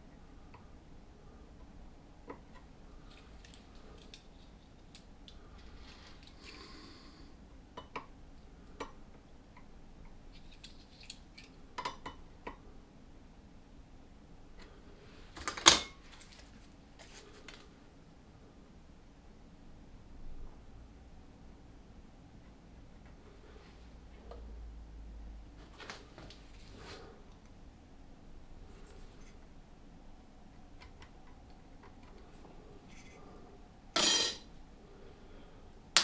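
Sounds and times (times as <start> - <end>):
tools clinking on workbench: 34.0 - 34.5.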